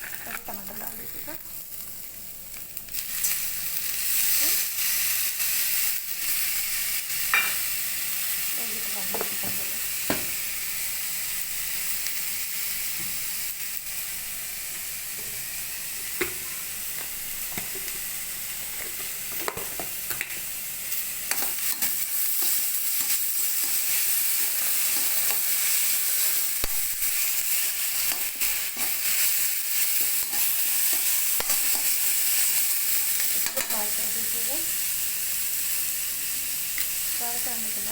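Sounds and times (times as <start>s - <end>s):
food sizzling in oil: 0.0s - 37.9s.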